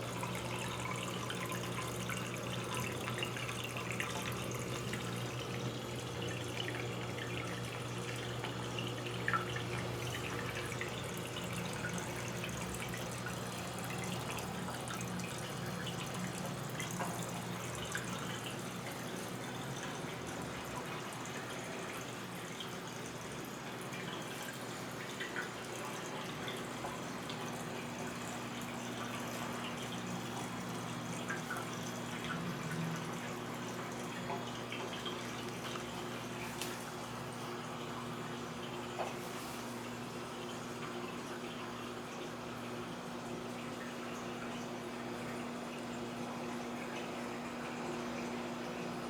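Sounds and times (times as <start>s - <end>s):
washing machine motor hum: 0.0s - 23.3s.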